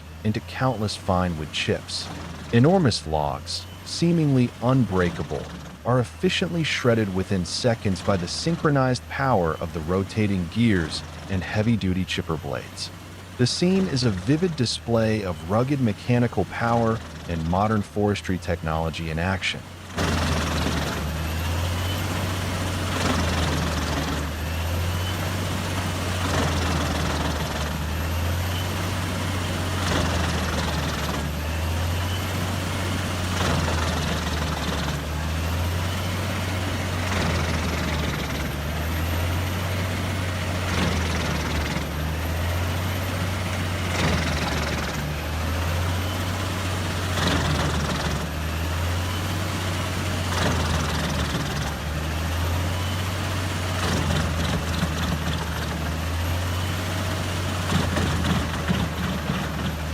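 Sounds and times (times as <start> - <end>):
tree chipper engine droning: 0.0 - 59.9
wood cracking in chipper: 53.6 - 59.9.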